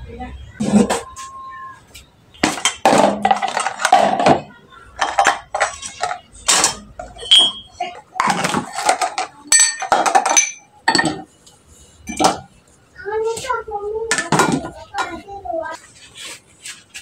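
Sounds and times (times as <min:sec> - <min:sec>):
dishes and cutlery clattering: 0:00.6 - 0:01.3, 0:02.4 - 0:11.4, 0:12.0 - 0:12.5, 0:14.1 - 0:15.2.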